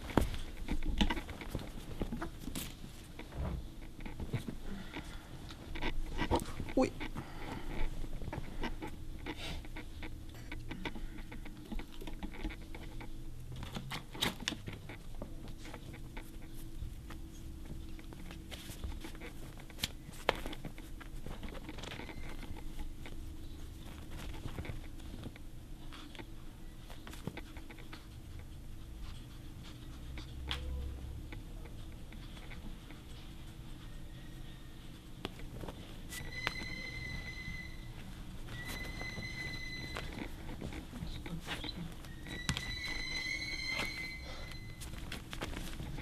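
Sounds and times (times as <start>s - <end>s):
ferret claws pattering and scratching: 0.0s - 46.0s
low steady hum: 0.0s - 46.0s.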